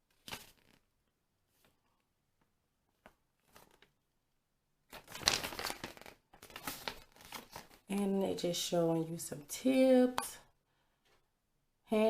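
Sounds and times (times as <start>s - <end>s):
paper sheets rustling: 0.1s - 0.8s, 3.4s - 3.9s, 4.9s - 7.8s.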